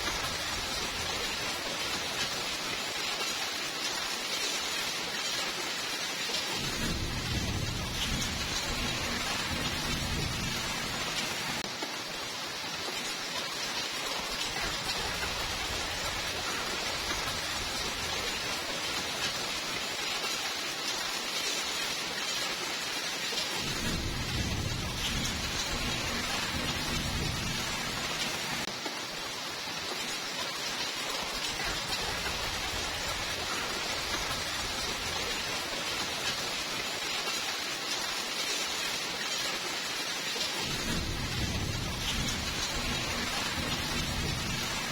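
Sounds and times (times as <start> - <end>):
steady rainfall: 0.0 - 44.9
rumble of thunder: 6.6 - 11.6, 23.6 - 28.7, 40.6 - 44.9.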